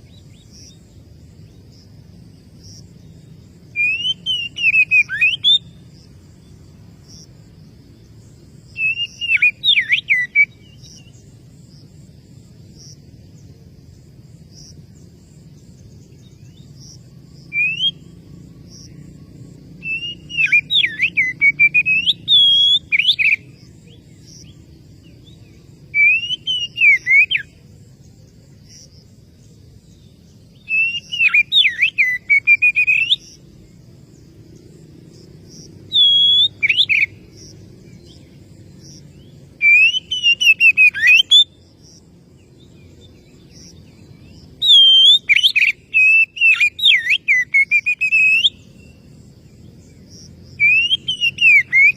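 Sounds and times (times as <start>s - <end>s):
magpie-robin singing whistled phrases: 3.7s - 5.8s, 8.7s - 11.1s, 17.4s - 18.1s, 19.8s - 23.5s, 25.9s - 27.5s, 30.6s - 33.4s, 35.9s - 37.2s, 39.6s - 41.6s, 44.6s - 49.0s, 50.6s - 51.9s.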